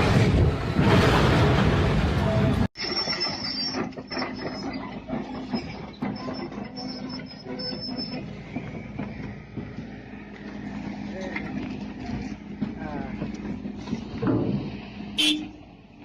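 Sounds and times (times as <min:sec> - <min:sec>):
heavy machinery humming: 0:00.0 - 0:16.0
high-pitched metal squeal: 0:02.8 - 0:09.2.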